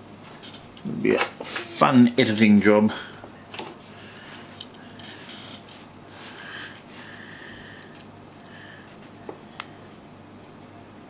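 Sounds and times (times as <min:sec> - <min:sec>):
low steady hum: 0:00.0 - 0:11.0
soft rustling: 0:03.6 - 0:09.2.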